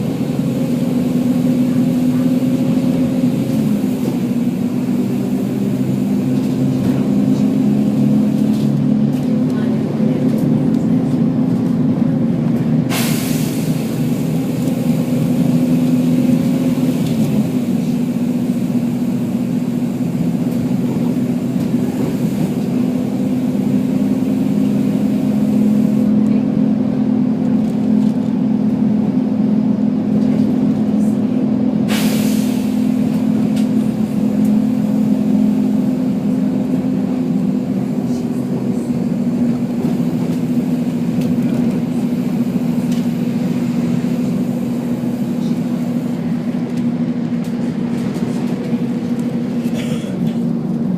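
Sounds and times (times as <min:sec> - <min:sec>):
bus diesel engine running: 0:00.0 - 0:50.9
compressed air hisses: 0:12.9 - 0:14.3.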